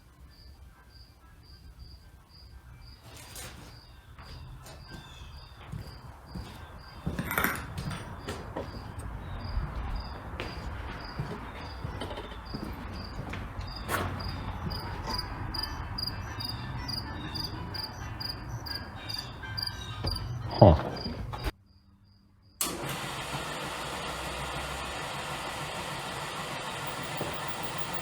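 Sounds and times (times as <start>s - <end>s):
insect chirping: 0.2s - 7.2s, 7.8s - 22.6s.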